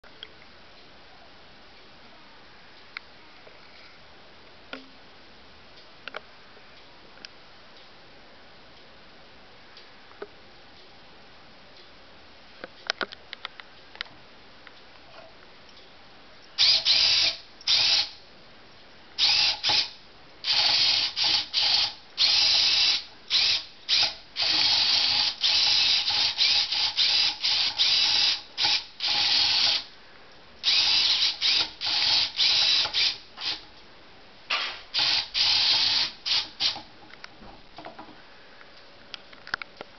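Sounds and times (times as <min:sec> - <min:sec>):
small electric motor whirring: 0:16.6 - 0:18.1, 0:19.2 - 0:19.9, 0:20.5 - 0:29.9, 0:30.6 - 0:33.6, 0:35.0 - 0:36.8.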